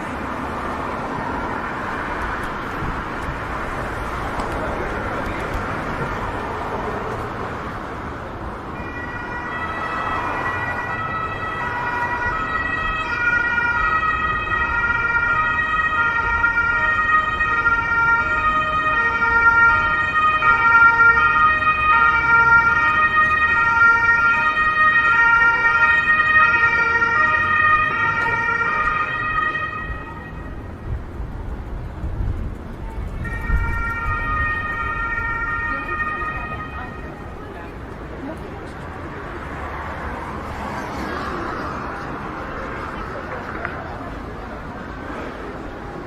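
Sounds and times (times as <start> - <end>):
street traffic noise: 0.0 - 46.0
two-tone emergency siren: 8.7 - 30.9, 33.0 - 37.6.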